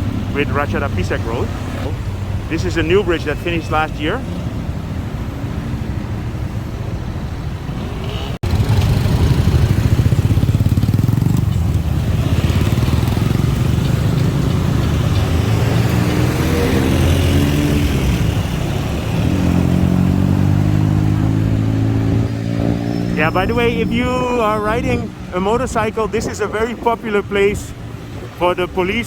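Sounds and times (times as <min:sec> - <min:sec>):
vehicle engine accelerating: 0:00.0 - 0:26.6
road traffic: 0:00.0 - 0:29.0.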